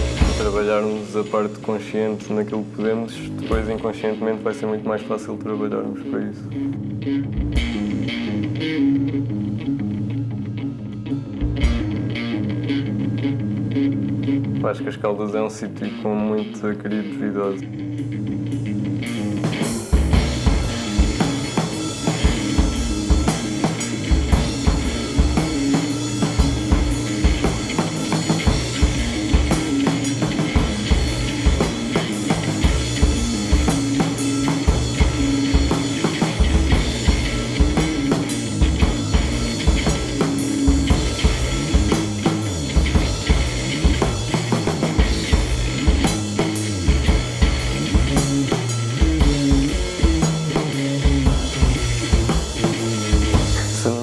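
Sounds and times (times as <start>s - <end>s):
drum kit beat: 0.0s - 2.0s, 3.3s - 4.0s, 7.4s - 8.2s, 19.4s - 54.0s
band music: 0.0s - 4.4s, 19.0s - 54.0s.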